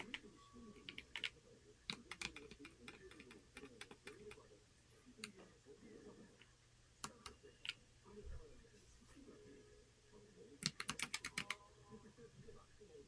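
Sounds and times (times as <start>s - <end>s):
mechanical keyboard key presses: 10.6s - 11.6s.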